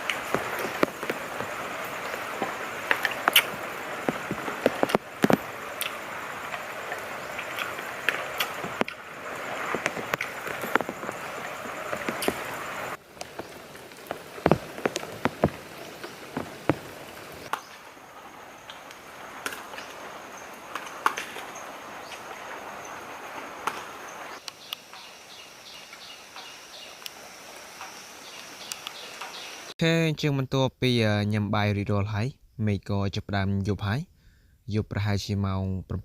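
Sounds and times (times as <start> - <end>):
sharp clicks and knocks: 13.2 - 16.9.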